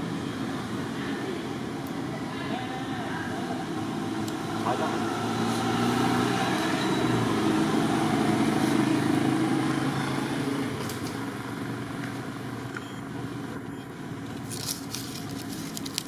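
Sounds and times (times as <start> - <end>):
vehicle engine passing by: 3.0 - 11.8.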